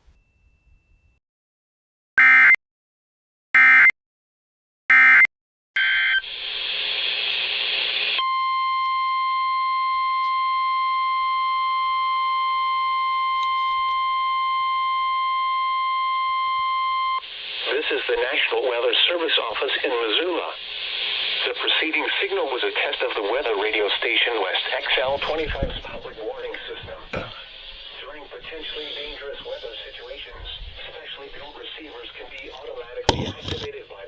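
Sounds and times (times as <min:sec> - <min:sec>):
radio hiss: 0:06.2 - 0:08.2, 0:17.2 - 0:34.0
steady alarm tone: 0:08.2 - 0:17.6.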